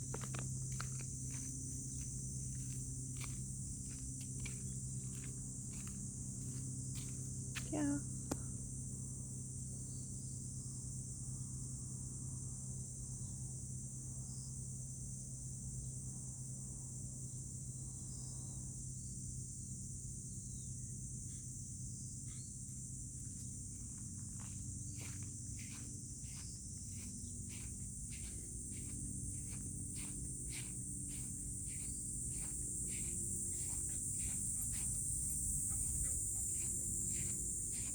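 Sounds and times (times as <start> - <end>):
insects droning: 0.0 - 37.9
low hum: 23.7 - 37.9.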